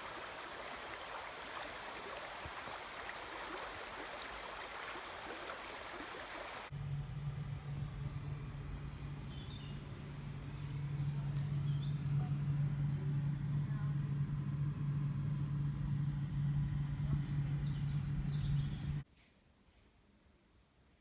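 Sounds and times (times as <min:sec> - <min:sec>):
small birds chirping: 0:00.0 - 0:06.7, 0:08.8 - 0:12.3, 0:16.9 - 0:19.0
low engine hum: 0:00.0 - 0:19.0.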